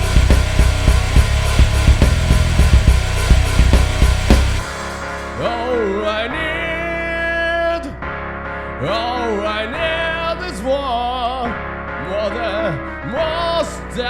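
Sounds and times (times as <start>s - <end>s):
rock band playing: 0.0s - 5.9s
sustained vocal or lead melody: 0.0s - 14.0s.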